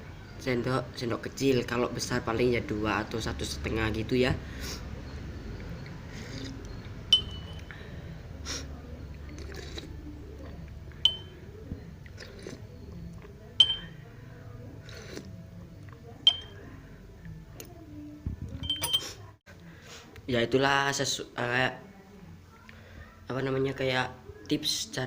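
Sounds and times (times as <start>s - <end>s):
spoon clinking against glass: 7.1s - 7.7s, 11.1s - 11.3s, 13.6s - 14.0s, 16.3s - 16.6s, 18.6s - 19.2s.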